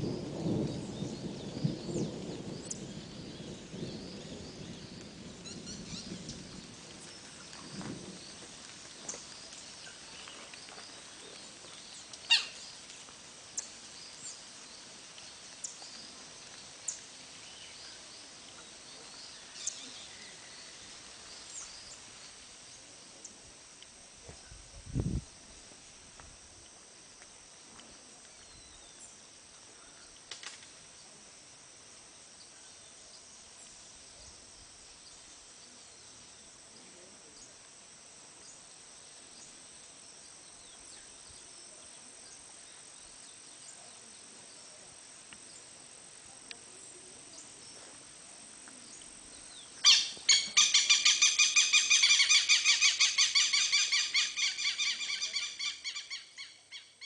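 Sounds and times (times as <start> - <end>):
bird calling in rapid pulses: 12.2 - 12.7, 49.8 - 57.0.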